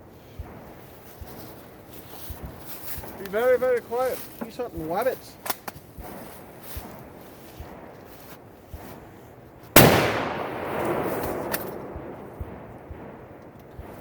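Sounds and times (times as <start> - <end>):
rifle shot with echo: 9.8 - 14.0.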